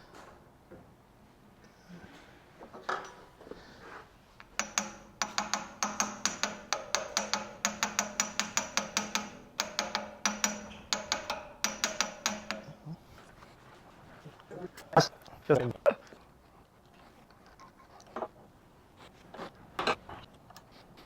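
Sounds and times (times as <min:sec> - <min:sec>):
sharp metallic taps with ringing: 0:04.4 - 0:13.0.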